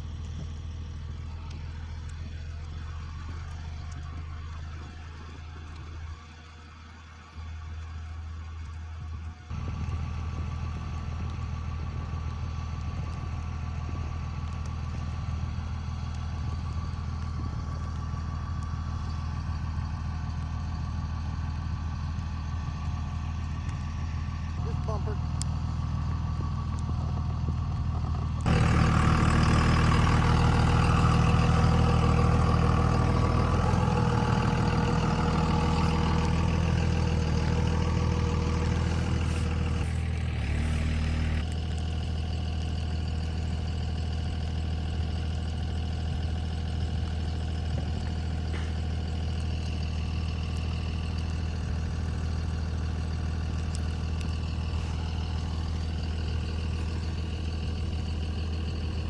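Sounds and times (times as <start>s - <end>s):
vehicle engine running: 0.0s - 59.0s
louder fuller engine sound: 9.5s - 59.0s.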